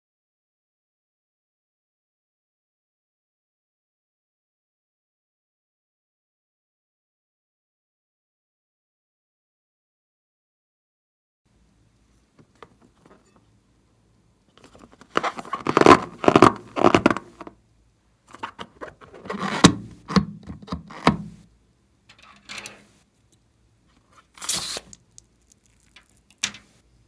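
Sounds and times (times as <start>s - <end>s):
hands scraping and rustling slime: 14.6s - 17.5s, 24.2s - 26.8s.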